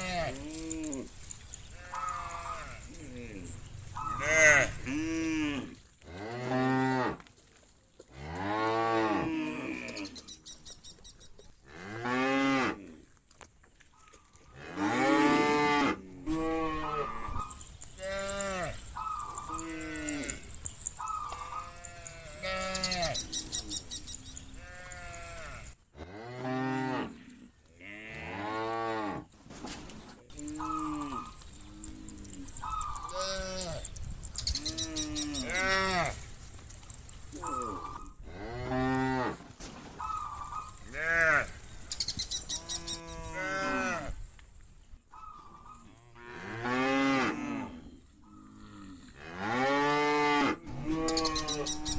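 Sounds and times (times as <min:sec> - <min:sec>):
cows mooing: 0:00.0 - 0:07.2, 0:14.6 - 0:29.2, 0:30.3 - 0:34.0, 0:34.6 - 0:36.3, 0:40.5 - 0:41.6, 0:42.5 - 0:44.2, 0:45.8 - 0:47.9, 0:48.5 - 0:51.9.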